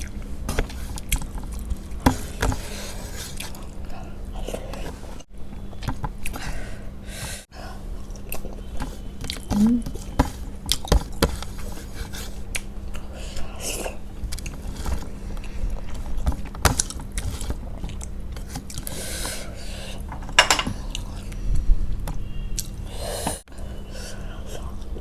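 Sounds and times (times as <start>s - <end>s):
person chewing food: 0.0s - 2.0s, 9.2s - 10.1s, 11.7s - 19.0s.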